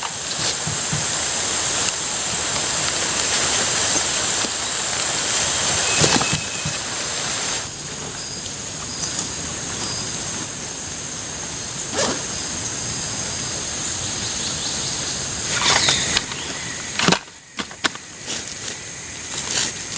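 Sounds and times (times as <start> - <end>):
heavy rain falling: 0.0 - 7.8.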